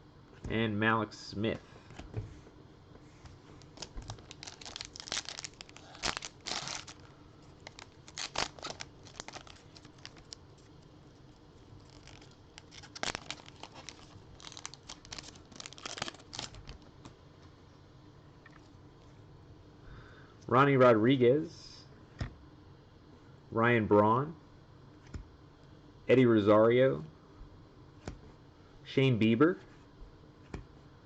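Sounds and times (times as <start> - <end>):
foil wrapper tearing and crinkling: 3.6 - 7.0, 7.6 - 10.8, 11.8 - 16.8.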